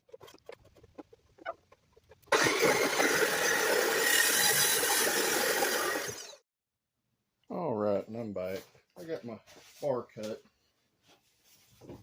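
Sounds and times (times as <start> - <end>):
chop saw cutting steel: 2.3 - 6.4.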